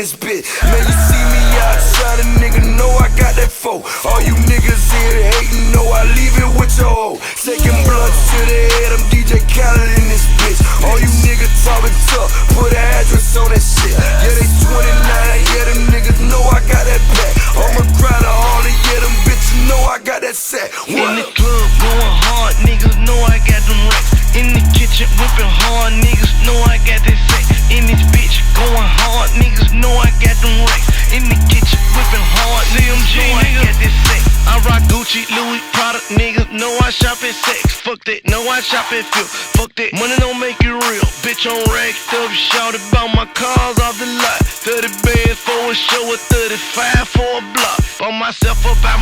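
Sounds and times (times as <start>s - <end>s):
hip hop music with heavy bass: 0.0s - 49.0s
vocals: 0.0s - 49.0s.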